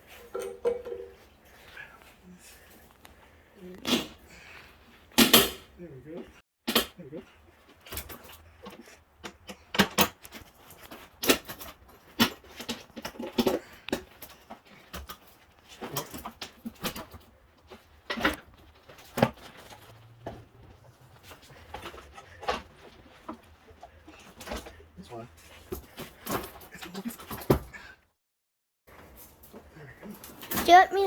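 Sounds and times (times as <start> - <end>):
metal knocks and clanks: 0.3 - 1.2.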